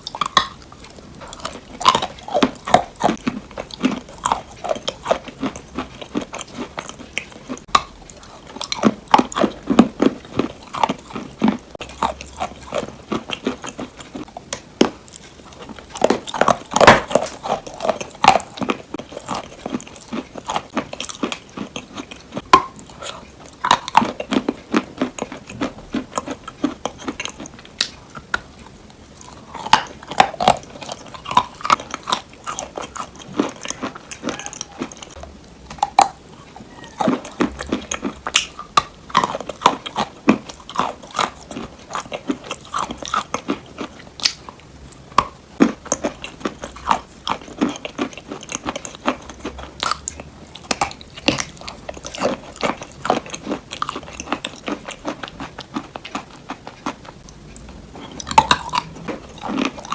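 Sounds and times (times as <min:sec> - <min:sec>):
close crunching and clicking: 0:00.0 - 0:59.9.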